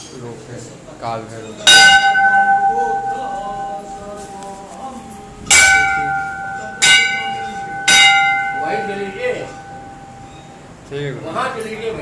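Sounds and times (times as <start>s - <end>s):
temple bell ringing: 1.6s - 10.9s.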